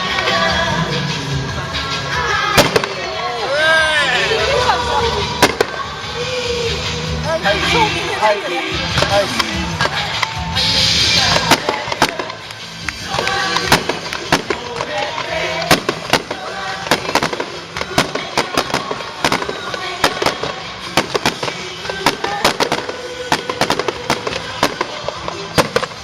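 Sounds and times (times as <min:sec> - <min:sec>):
music playing: 0:00.0 - 0:26.0
fireworks bangs and crackles: 0:01.8 - 0:26.0.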